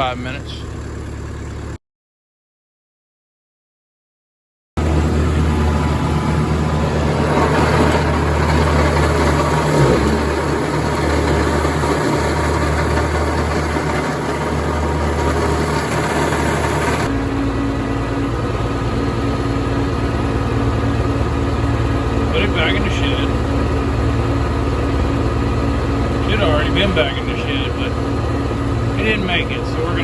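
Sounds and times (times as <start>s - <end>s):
mower running: 0.0s - 1.8s, 4.8s - 30.0s
tractor engine running: 0.0s - 1.8s, 4.8s - 30.0s.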